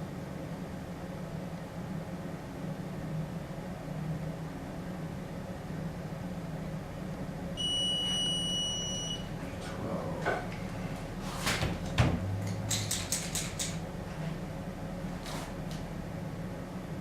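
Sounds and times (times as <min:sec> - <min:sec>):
high electronic beep: 0:07.6 - 0:09.2
tools clicking and knocking: 0:12.5 - 0:13.8.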